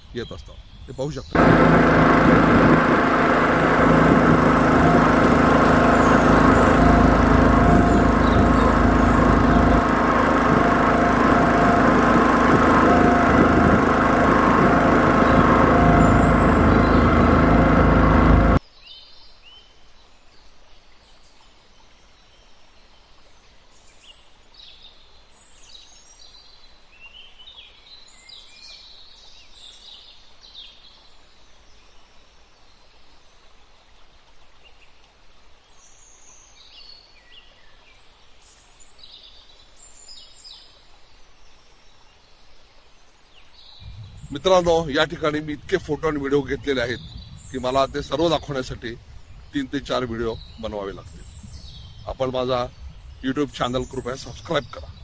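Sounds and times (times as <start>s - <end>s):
birds chirping: 0.0s - 18.6s, 43.8s - 55.0s
boat engine running: 0.3s - 18.6s, 43.8s - 48.8s.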